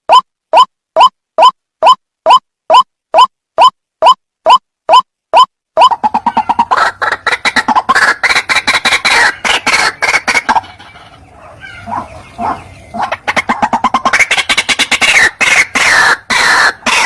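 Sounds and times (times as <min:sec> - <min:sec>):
waterhen harsh croaking calls: 0:05.8 - 0:17.0.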